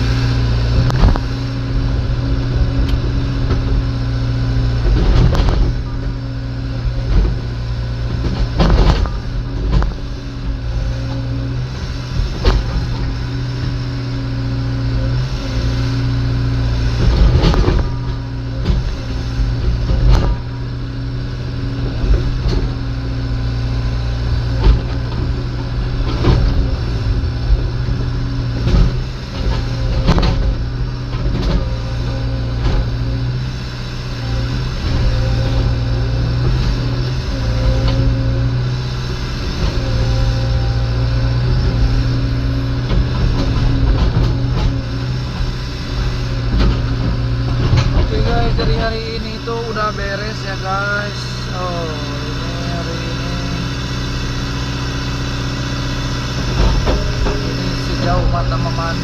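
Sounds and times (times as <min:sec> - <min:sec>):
excavator diesel engine running: 0:00.0 - 0:59.0
sharp knocks and clanks: 0:08.1 - 0:10.1, 0:16.9 - 0:20.6, 0:41.4 - 0:49.6, 0:56.4 - 0:59.0.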